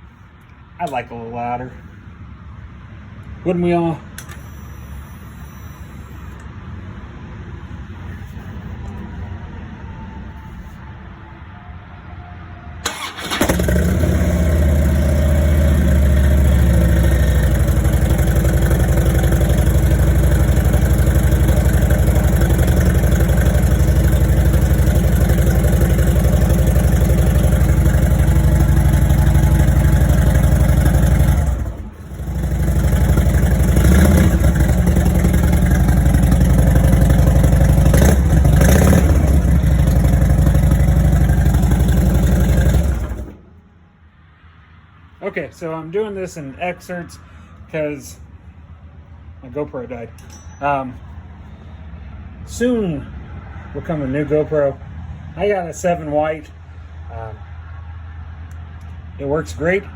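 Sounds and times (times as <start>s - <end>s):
motorcycle engine idling: 12.9s - 43.5s.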